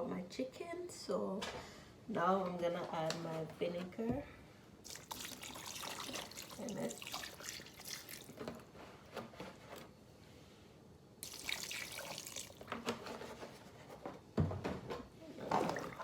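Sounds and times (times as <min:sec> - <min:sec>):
liquid sloshing on raw chicken: 0:04.8 - 0:08.5, 0:11.2 - 0:12.7, 0:15.4 - 0:16.0.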